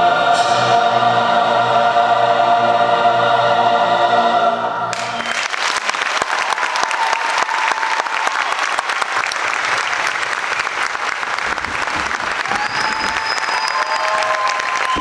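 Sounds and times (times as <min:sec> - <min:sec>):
audience applauding: 0:04.9 - 0:15.0.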